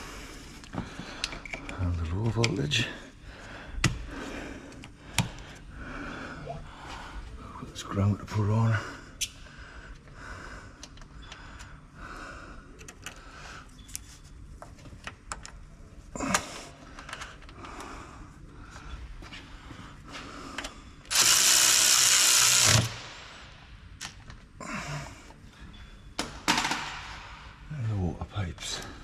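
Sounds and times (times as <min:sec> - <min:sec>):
power tool burst: 0:21.1 - 0:23.5
tools clicking and knocking: 0:26.2 - 0:27.2.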